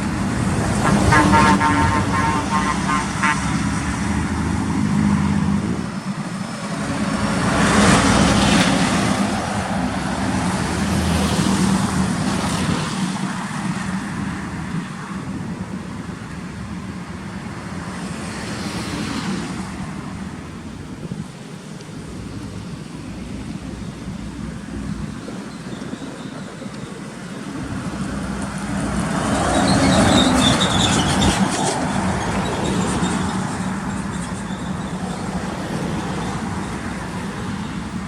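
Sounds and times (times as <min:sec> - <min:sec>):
truck diesel engine under load: 0:00.0 - 0:38.0
truck horn: 0:00.7 - 0:04.2.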